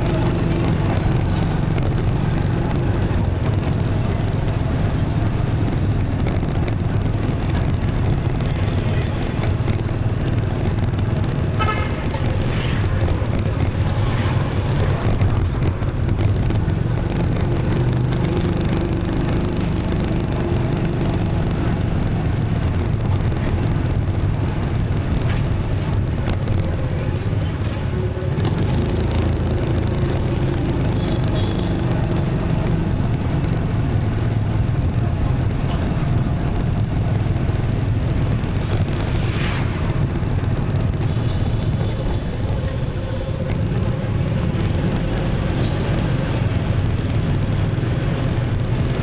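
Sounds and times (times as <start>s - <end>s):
city traffic: 0.0s - 49.0s
motorbike engine running: 0.0s - 49.0s
road noise: 0.0s - 49.0s
short horn beep: 45.1s - 45.8s.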